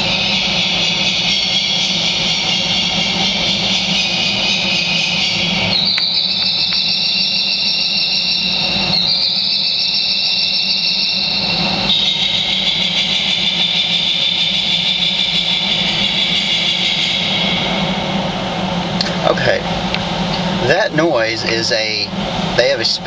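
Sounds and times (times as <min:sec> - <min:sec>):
electronic bird chirps: 0:00.0 - 0:17.7
steady low hum: 0:00.0 - 0:23.0.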